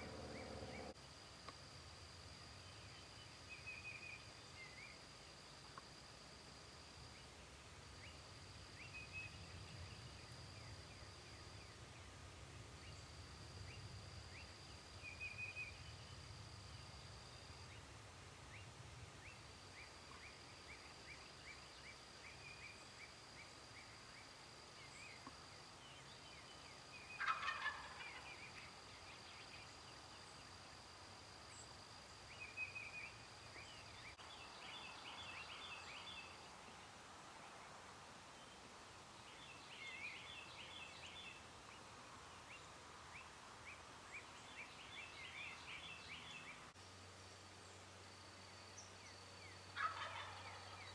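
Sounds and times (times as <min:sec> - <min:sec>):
small birds chirping: 0:00.0 - 0:01.0, 0:39.2 - 0:46.8
turkey gobbling: 0:27.2 - 0:28.4, 0:49.8 - 0:50.9.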